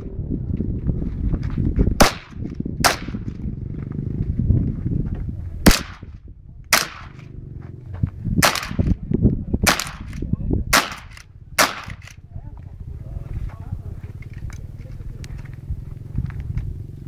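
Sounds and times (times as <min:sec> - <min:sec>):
low rumbling noise: 0:00.0 - 0:17.0
shotgun shots: 0:02.0 - 0:03.4, 0:05.6 - 0:06.1, 0:06.7 - 0:07.3, 0:08.4 - 0:09.0, 0:09.6 - 0:12.2.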